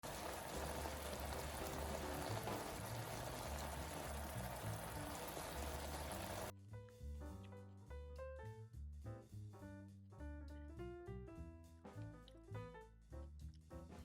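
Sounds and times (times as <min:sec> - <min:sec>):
food hissing in hot pan: 0:00.0 - 0:06.5
background music bass line: 0:00.0 - 0:14.0.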